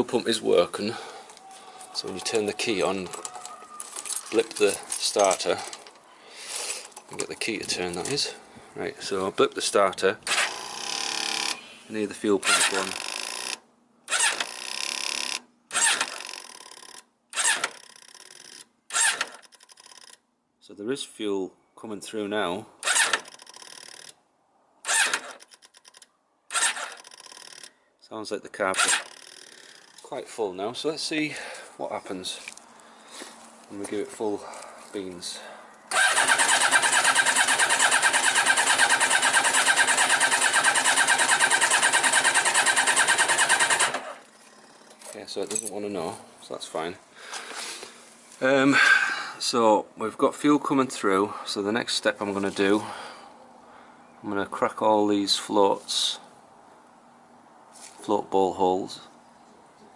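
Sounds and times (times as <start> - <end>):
engine starter cranking: 10.3 - 11.6, 12.4 - 20.2, 22.8 - 24.2, 24.8 - 27.7, 28.8 - 30.0, 35.9 - 44.3.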